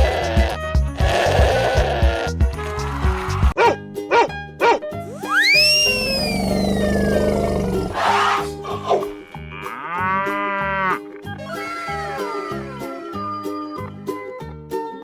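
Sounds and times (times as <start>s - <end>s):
upbeat background music: 0.0s - 6.2s
animal calls: 3.6s - 10.0s.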